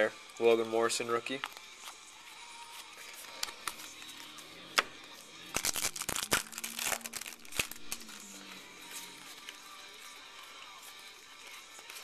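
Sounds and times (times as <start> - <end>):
cards crinkling and crackling: 2.7 - 12.0.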